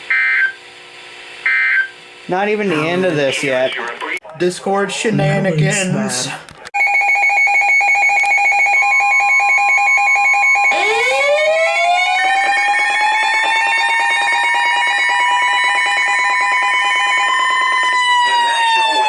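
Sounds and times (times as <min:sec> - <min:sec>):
fast-pulsing alarm tone: 0:06.8 - 0:19.0
siren wailing: 0:06.8 - 0:19.0.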